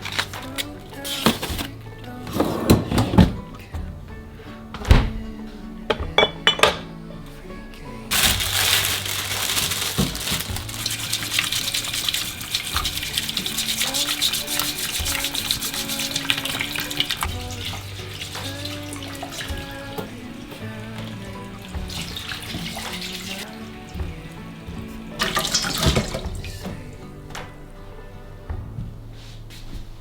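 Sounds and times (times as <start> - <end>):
tap water running into sink: 8.1 - 27.5.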